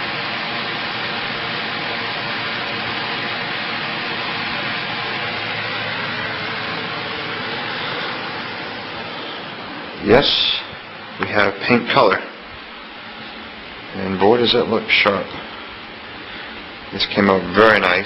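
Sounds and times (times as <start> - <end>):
steady hiss of rushing air: 0.0 - 18.0.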